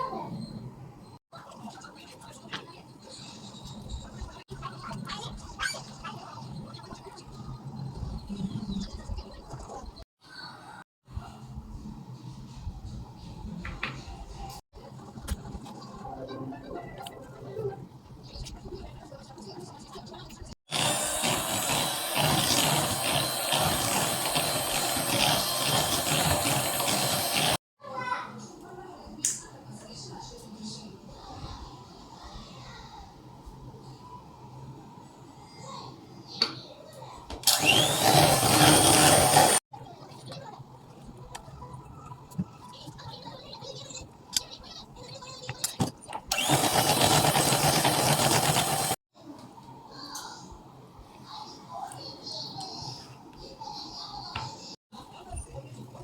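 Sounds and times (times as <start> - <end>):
electric mixer motor running: 20.7 - 27.6, 37.4 - 39.6, 46.3 - 49.0.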